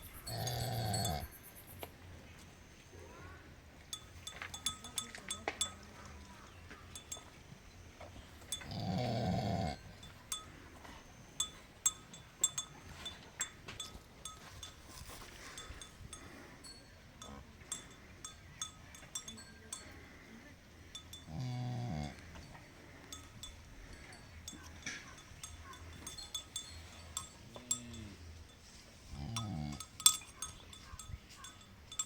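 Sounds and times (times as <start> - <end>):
light clicks and clinks: 0.1 - 2.0, 3.9 - 32.0
cattle mooing: 0.2 - 1.3, 8.6 - 9.9, 21.3 - 22.4.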